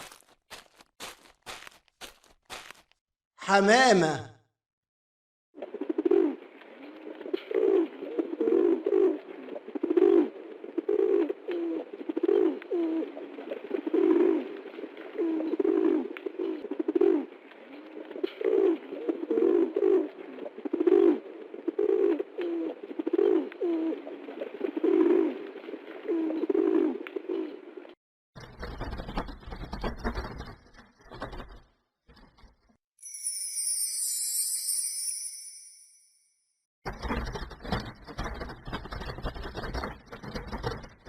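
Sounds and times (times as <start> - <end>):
pigeon cooing: 7.4 - 14.5, 18.2 - 25.4, 26.0 - 27.6.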